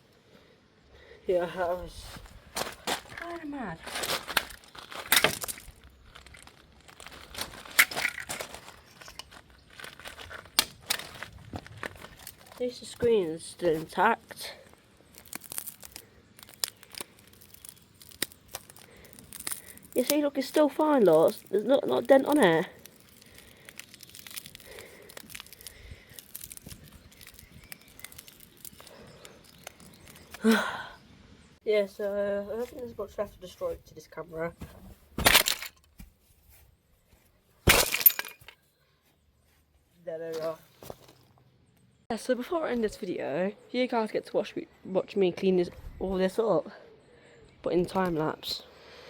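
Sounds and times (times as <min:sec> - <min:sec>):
plastic parts clicking and crinkling: 0:02.6 - 0:30.4, 0:35.2 - 0:36.0
broken plastic crackling: 0:02.6 - 0:30.5, 0:35.2 - 0:36.0.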